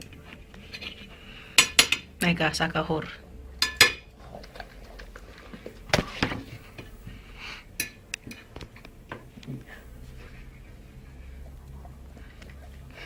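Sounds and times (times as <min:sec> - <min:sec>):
dishes and cutlery clinking: 0:00.0 - 0:02.3, 0:03.0 - 0:06.9, 0:07.8 - 0:09.8.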